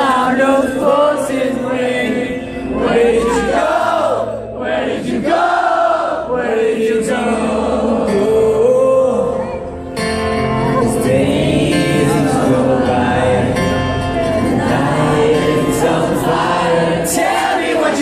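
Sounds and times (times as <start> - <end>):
acoustic guitar: 0.0 - 18.0
crowd singing along: 0.0 - 18.0
person singing rock song: 10.5 - 18.0.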